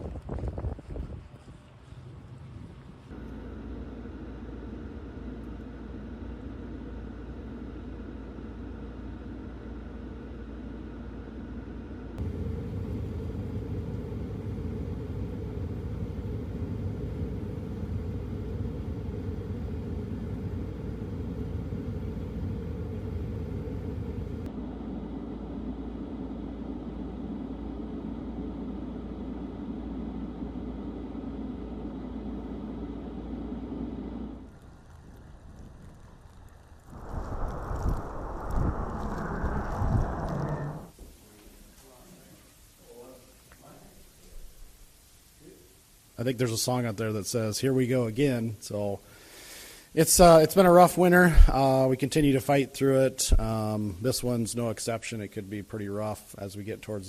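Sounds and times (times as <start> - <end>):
low rumble of vehicle noise: 0.0 - 41.0.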